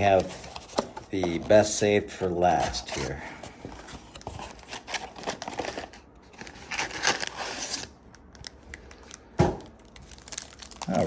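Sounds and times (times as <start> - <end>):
plastic packaging crinkling: 3.8 - 11.0.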